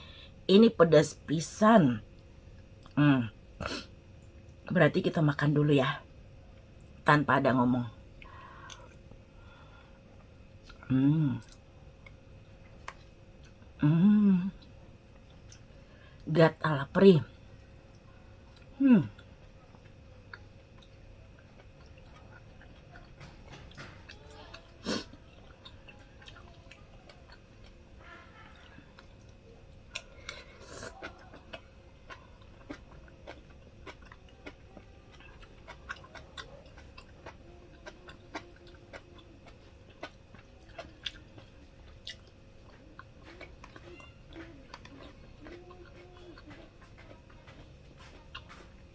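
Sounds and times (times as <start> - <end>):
person chewing food: 8.0 - 13.8, 14.4 - 16.3, 17.4 - 48.9.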